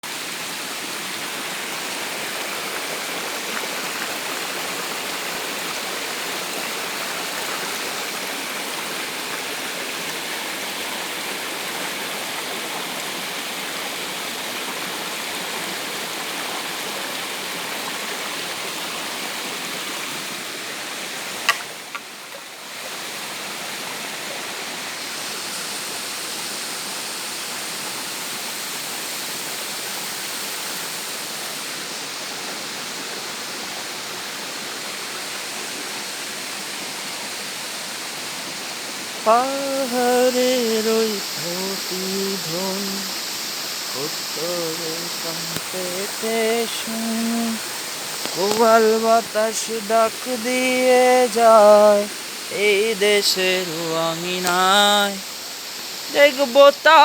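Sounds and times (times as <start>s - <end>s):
waterfall rushing over rocks: 0.0s - 57.0s
sharp click: 21.4s - 22.0s.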